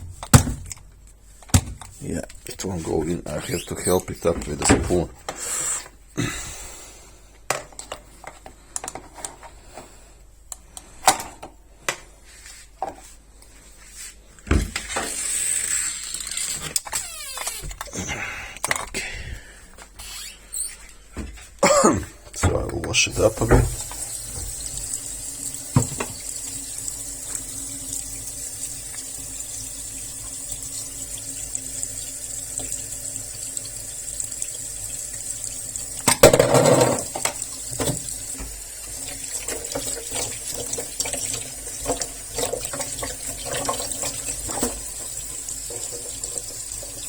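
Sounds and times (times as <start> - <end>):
tap water running into sink: 22.5 - 47.0.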